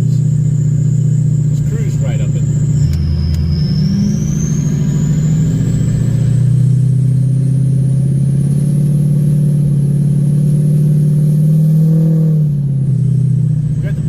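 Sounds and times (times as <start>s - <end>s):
diesel truck engine drone: 0.0s - 14.0s
thin high whistle rising: 2.6s - 6.5s.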